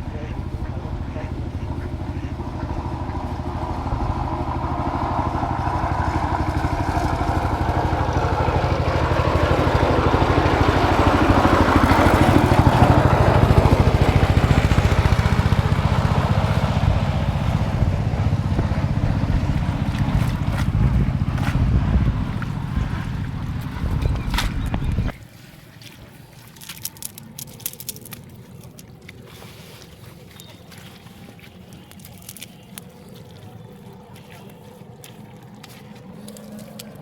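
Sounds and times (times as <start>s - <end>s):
small engine running: 0.0s - 25.2s.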